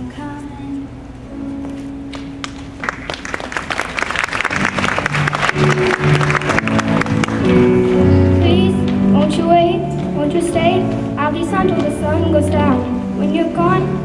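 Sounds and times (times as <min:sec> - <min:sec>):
song instrumental intro: 0:01.3 - 0:14.0
clapping and applause: 0:02.1 - 0:07.7.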